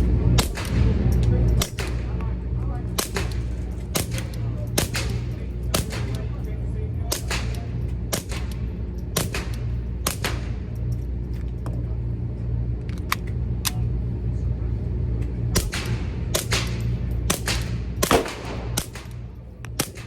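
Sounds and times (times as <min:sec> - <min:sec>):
steady low hum: 0:00.0 - 0:20.0
pistol slide cycling: 0:15.6 - 0:20.0
suppressed pistol shots: 0:15.6 - 0:20.0.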